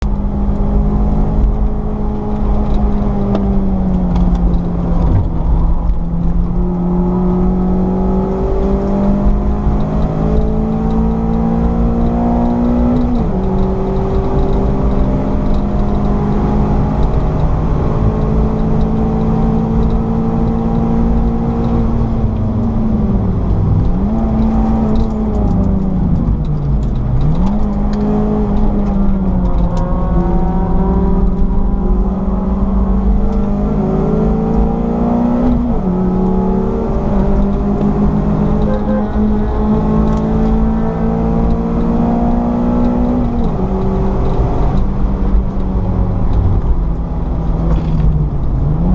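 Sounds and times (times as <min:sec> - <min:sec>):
heavy low rumble: 0:00.0 - 0:07.4, 0:21.8 - 0:33.4, 0:38.4 - 0:40.2
car engine at high revs: 0:00.0 - 0:48.9.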